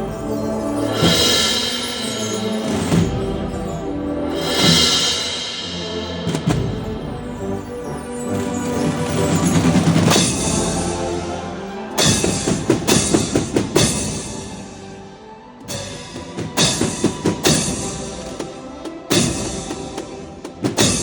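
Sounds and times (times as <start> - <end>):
drum and cymbal strikes: 0.0 - 8.0, 9.3 - 14.8, 15.7 - 21.0
brass marching band playing: 0.0 - 14.9.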